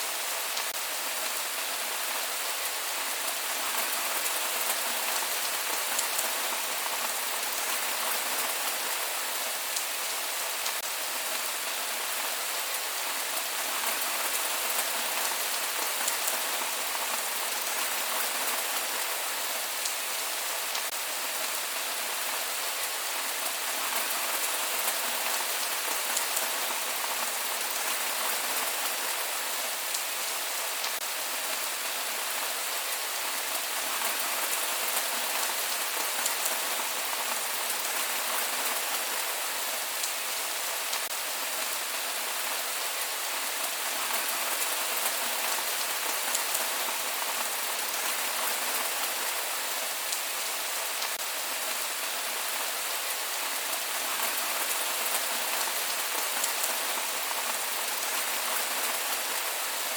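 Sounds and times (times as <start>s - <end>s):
steady rain hiss: 0.0s - 59.9s
raindrops ticking on a surface: 3.2s - 9.0s, 9.7s - 11.6s, 12.2s - 20.1s, 20.7s - 21.6s, 22.2s - 39.4s, 40.0s - 41.8s, 42.4s - 51.8s.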